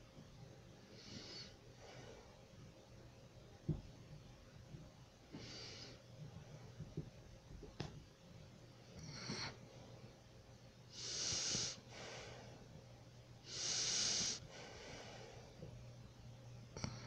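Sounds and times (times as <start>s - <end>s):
person snoring: 11.0s - 11.8s, 13.5s - 14.4s.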